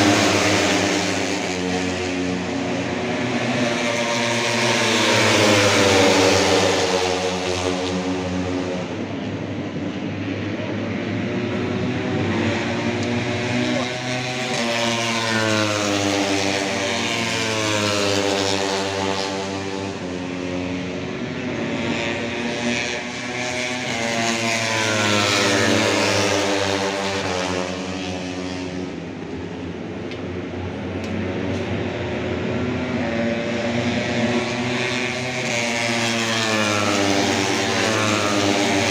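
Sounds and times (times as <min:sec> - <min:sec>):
race engines accelerating: 0:00.0 - 0:38.9.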